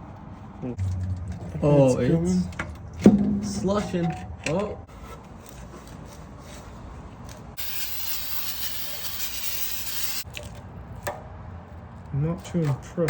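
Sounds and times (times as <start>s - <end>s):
faint shop background: 0.0s - 13.0s
pressurised spray hissing: 7.6s - 10.2s.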